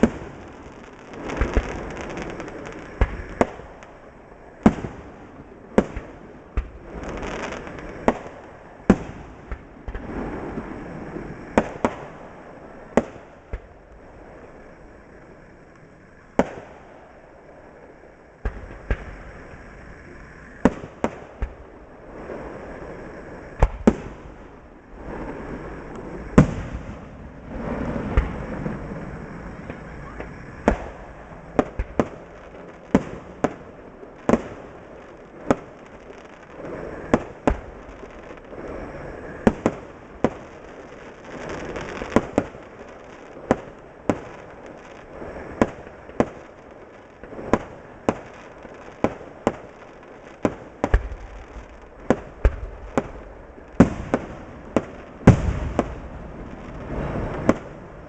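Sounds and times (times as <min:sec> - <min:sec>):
fireworks bursting in bangs: 0:00.0 - 0:03.9, 0:04.6 - 0:05.1, 0:05.7 - 0:10.4, 0:16.4 - 0:16.8, 0:23.6 - 0:24.4, 0:26.3 - 0:28.8, 0:29.5 - 0:38.4, 0:41.2 - 0:44.9, 0:47.2 - 0:57.9
steady background noise: 0:00.0 - 0:58.0.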